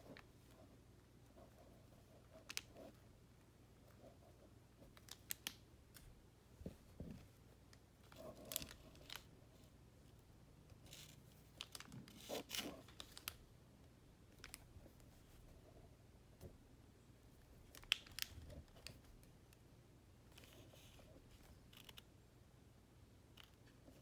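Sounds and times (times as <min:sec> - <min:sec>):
toy handling rustles and crinkles: 0:08.0 - 0:09.3, 0:10.8 - 0:13.4.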